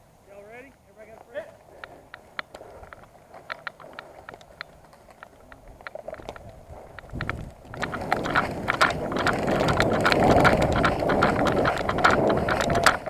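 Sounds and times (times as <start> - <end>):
running footsteps: 0.7 - 13.0
sharp clicks: 1.2 - 13.0
gear rattling: 2.8 - 13.0
wind on microphone: 5.6 - 13.0.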